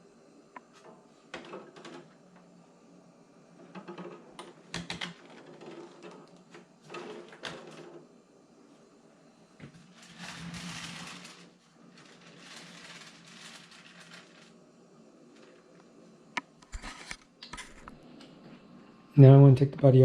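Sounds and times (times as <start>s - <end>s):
faint handling rustling: 9.6s - 14.6s.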